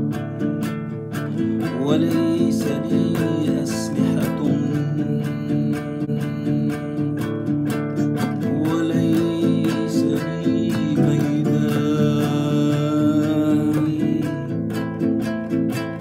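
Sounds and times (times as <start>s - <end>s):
acoustic guitar strumming: 0.0s - 16.0s
person singing a wavering note: 1.7s - 7.2s, 8.3s - 14.5s.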